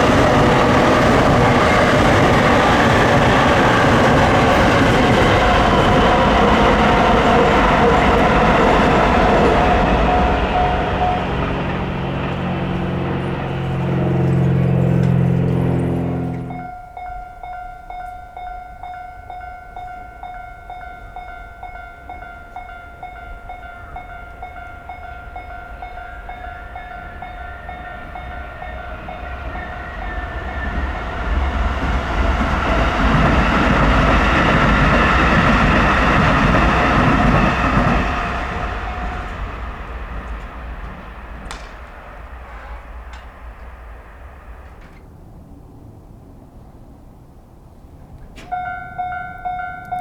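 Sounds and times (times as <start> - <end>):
level crossing alarm ringing: 0.0 - 31.8, 48.4 - 50.0
train passing with rumble: 0.0 - 50.0.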